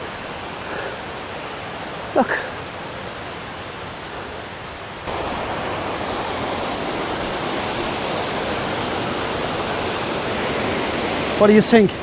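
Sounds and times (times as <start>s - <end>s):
waterfall rushing: 5.0s - 12.0s.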